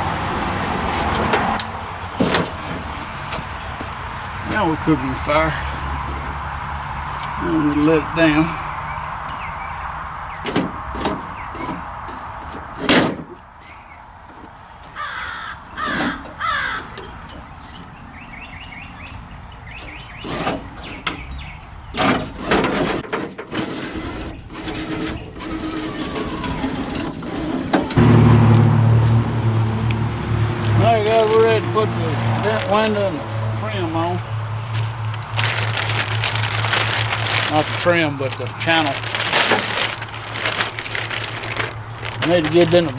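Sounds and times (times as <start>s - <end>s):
harsh cawing squeaks: 15.0s - 17.2s.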